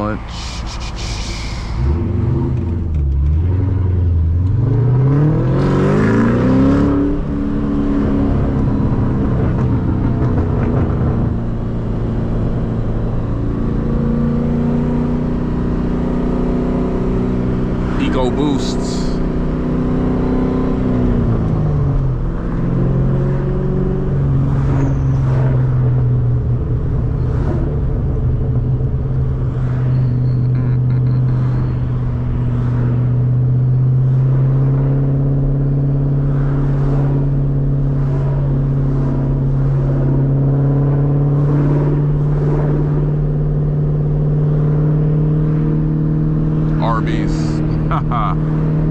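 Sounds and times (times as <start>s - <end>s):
car engine droning while driving: 0.0s - 48.9s.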